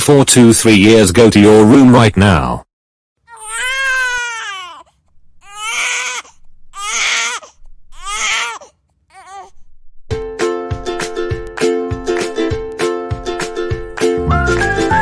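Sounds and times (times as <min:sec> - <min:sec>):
cartoon character crying: 0:03.3 - 0:04.8
plucked string music: 0:10.1 - 0:15.0.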